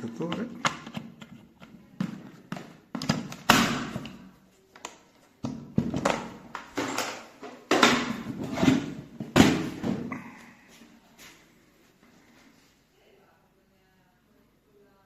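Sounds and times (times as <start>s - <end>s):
drill kit parts knocking and rattling: 5.7s - 10.1s.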